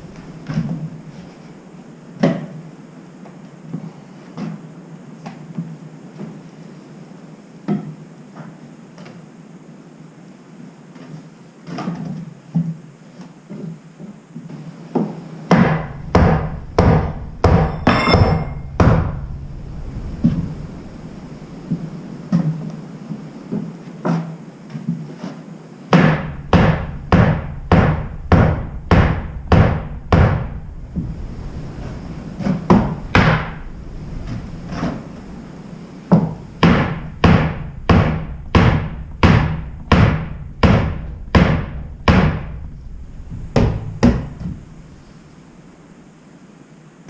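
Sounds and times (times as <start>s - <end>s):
hammer striking timber: 15.5s - 19.2s, 25.9s - 30.6s, 32.7s - 33.6s, 36.1s - 42.7s, 43.6s - 44.5s.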